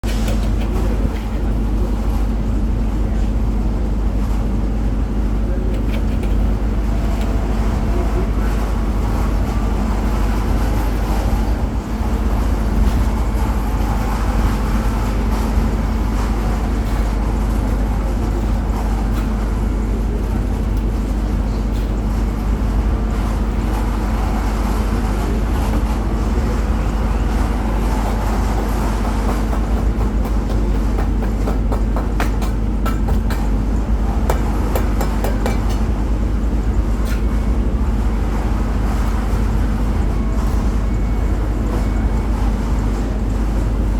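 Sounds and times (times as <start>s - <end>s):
concrete mixer engine rumbling: 0.0s - 43.9s
sharp knocks: 28.2s - 33.6s, 34.2s - 35.9s.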